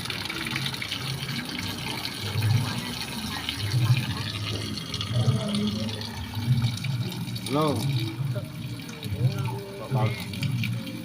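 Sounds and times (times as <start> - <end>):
water pouring and splashing: 0.0 - 11.0.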